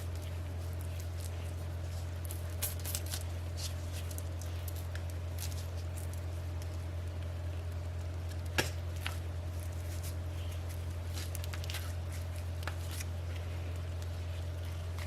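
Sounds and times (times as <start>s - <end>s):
squishy handling of sausage meat: 0.0s - 6.9s
low electrical hum: 0.0s - 15.0s.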